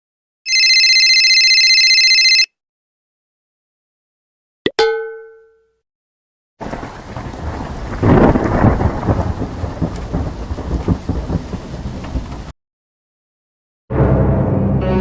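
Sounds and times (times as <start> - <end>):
rain hiss: 6.6 - 12.5
rolling thunder rumble: 6.6 - 12.5.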